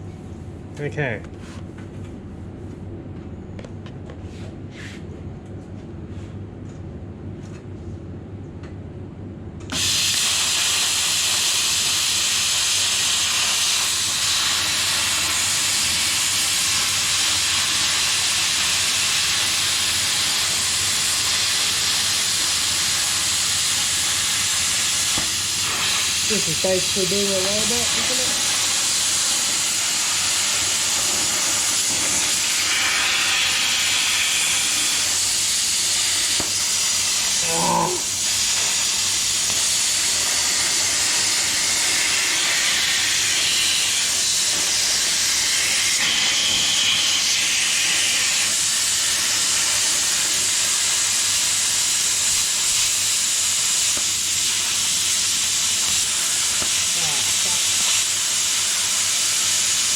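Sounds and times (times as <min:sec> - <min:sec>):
plasma cutter hissing: 0:09.7 - 0:59.9.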